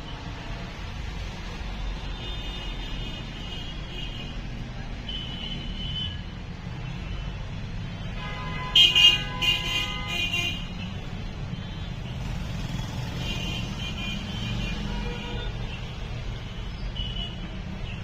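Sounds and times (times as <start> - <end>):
traffic rumble: 0.0 - 18.0
vehicle horn honking: 8.1 - 10.8.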